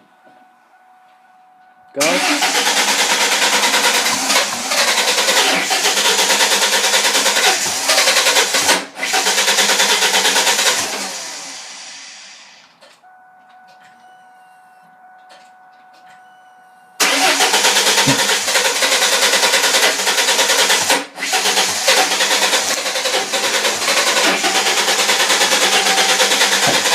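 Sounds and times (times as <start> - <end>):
faint steady tone: 0.0 - 2.0, 13.0 - 17.0
engine cranking on starter: 2.0 - 12.7, 17.0 - 26.9.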